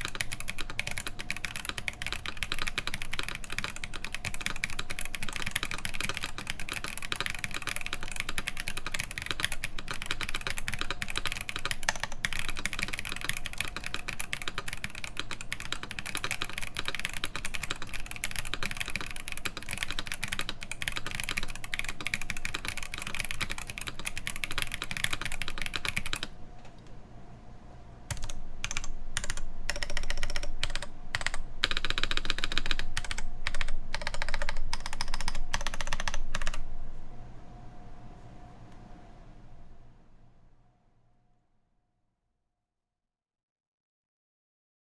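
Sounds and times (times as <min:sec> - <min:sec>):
fast typing on mechanical keyboard: 0:00.0 - 0:26.4, 0:28.1 - 0:36.6.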